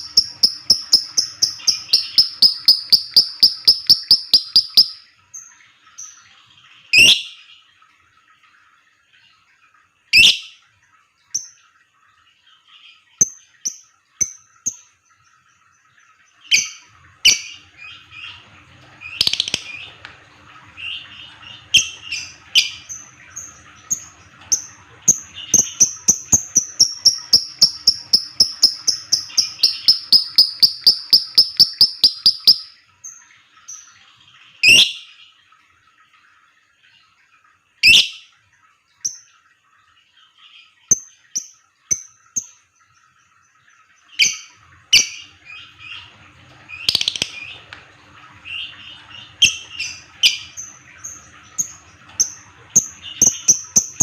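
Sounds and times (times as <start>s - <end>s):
lovebird chirping: 0.0s - 5.0s, 19.1s - 19.8s, 25.5s - 32.7s, 46.8s - 47.5s
lovebird fast chattering song: 0.0s - 5.0s, 19.1s - 19.8s, 24.5s - 32.8s, 46.8s - 47.5s.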